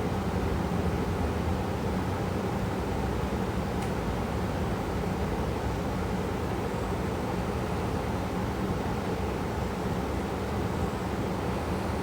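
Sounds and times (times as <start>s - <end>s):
steady hiss with low rumble: 0.0s - 12.0s
faint tick: 3.8s - 4.0s.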